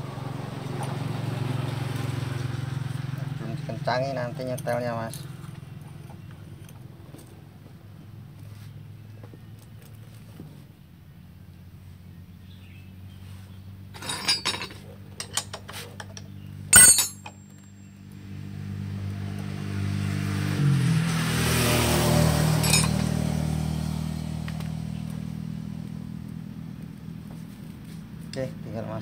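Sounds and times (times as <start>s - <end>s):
vehicle engine humming: 0.0s - 29.0s
metal tools clinking: 4.3s - 7.4s, 13.9s - 17.9s, 22.6s - 23.2s
loud metal clank: 16.7s - 17.4s, 22.6s - 23.2s.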